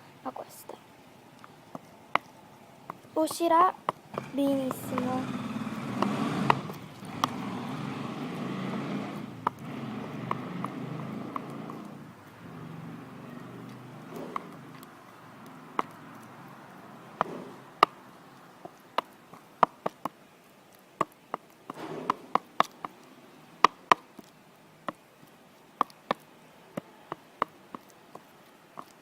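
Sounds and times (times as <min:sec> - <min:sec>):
brush handle stirring sticky slime: 0:04.1 - 0:05.4.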